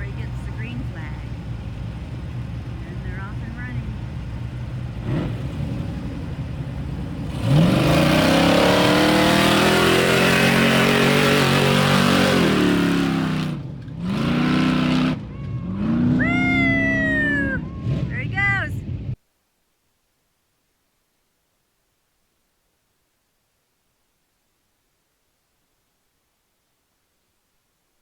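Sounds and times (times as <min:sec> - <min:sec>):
race car engine revving: 0:00.0 - 0:19.2.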